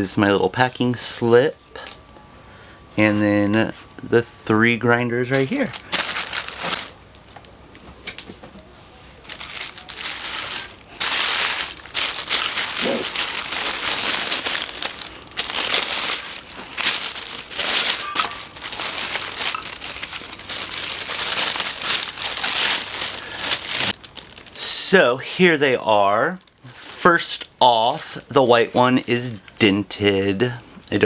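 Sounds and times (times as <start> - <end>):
packaging crinkling and rustling: 5.2 - 24.7, 26.3 - 27.0.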